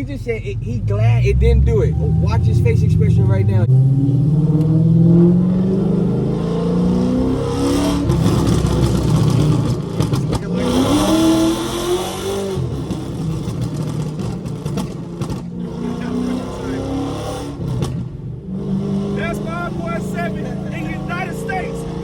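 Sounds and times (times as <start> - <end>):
car exhaust revving: 0.0 - 22.0
exhaust cracks: 7.9 - 18.4.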